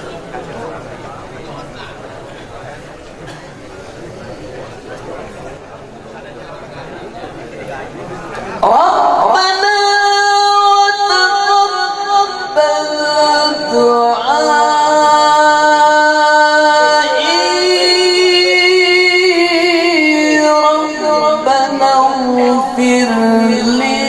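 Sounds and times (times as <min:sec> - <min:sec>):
man reciting melodically: 0:08.6 - 0:24.0.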